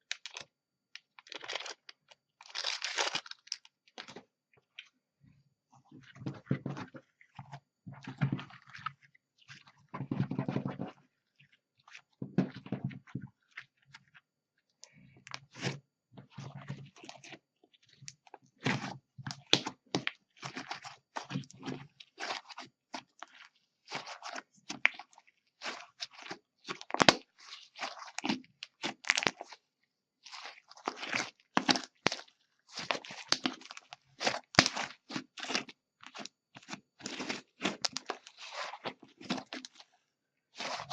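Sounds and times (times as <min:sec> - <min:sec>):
slime squishing and crackling: 0:00.0 - 0:04.9, 0:14.9 - 0:40.9.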